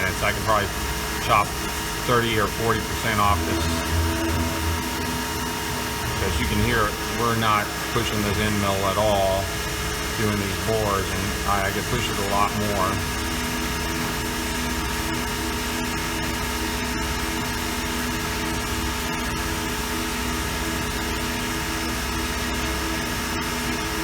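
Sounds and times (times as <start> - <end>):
mill spindle machining: 0.0 - 16.5.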